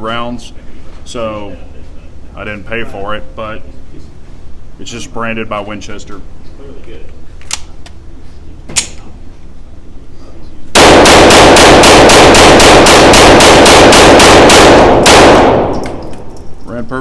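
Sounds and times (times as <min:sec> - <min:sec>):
pistol firing rapidly: 0:10.7 - 0:16.1.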